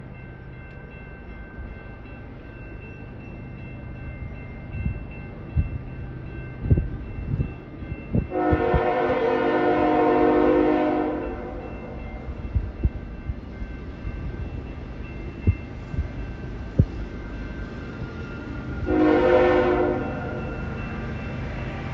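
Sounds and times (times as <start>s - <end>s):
low rumble of locomotives: 0.0s - 21.9s
locomotive air horn blast: 8.3s - 11.6s, 18.9s - 20.4s.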